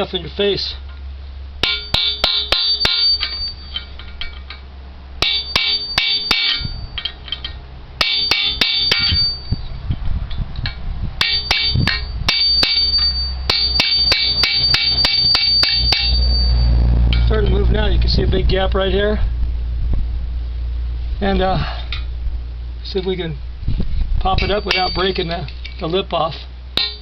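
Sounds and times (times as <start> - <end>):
hammer striking steel: 1.6 - 4.6, 5.2 - 9.5, 11.2 - 17.6, 24.4 - 25.5, 26.8 - 27.0.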